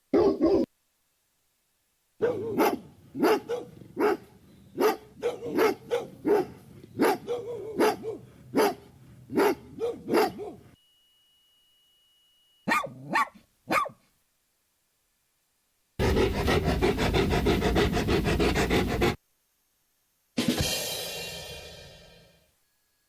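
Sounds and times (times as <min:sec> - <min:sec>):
dog barking: 0:00.1 - 0:00.7, 0:02.2 - 0:10.8, 0:12.7 - 0:14.1.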